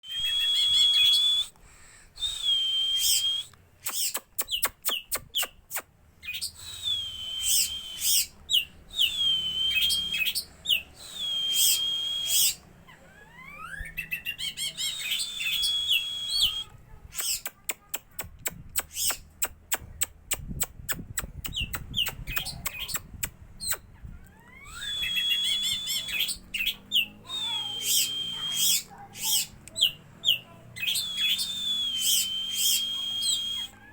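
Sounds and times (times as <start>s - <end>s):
songbird singing whistles and clicks: 0.0s - 1.6s, 2.2s - 12.7s, 13.6s - 33.8s.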